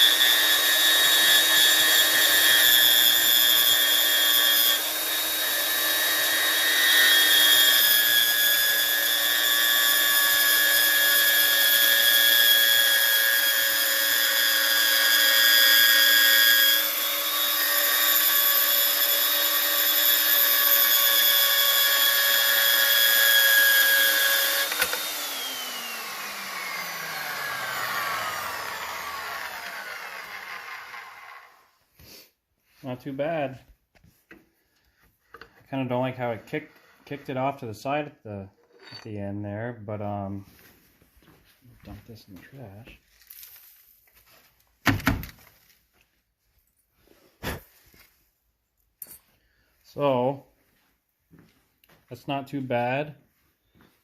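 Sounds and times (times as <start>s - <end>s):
bandsaw whining through metal: 0.0s - 32.2s
motor spinning down: 24.2s - 31.6s.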